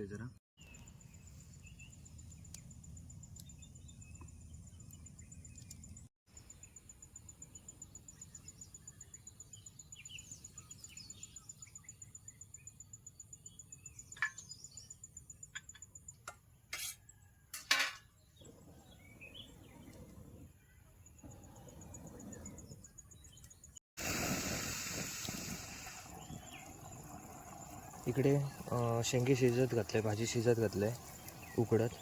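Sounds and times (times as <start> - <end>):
faint bird chirps: 0.0 - 17.5, 18.1 - 23.8, 25.8 - 32.0
short scrape: 16.7 - 17.0.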